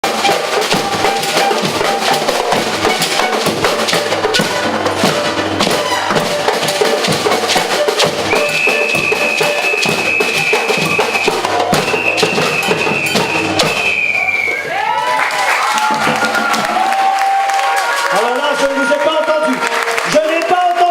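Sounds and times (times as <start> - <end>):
drum group playing rhythm: 0.0 - 14.4, 15.6 - 18.7
high whistle blasts: 8.2 - 15.0.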